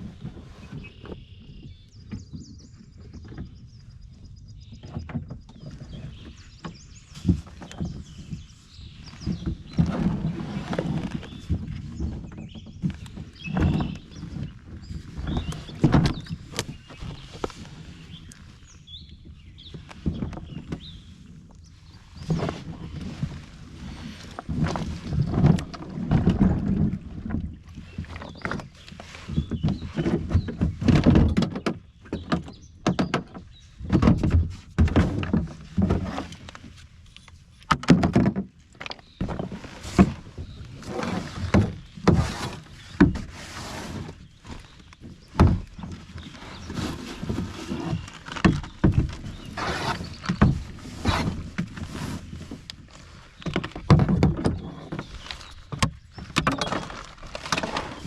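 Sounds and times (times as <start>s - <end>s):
kayak hull knocked and scraped: 4.6s - 58.0s
rustling: 21.9s - 31.3s, 38.7s - 58.0s.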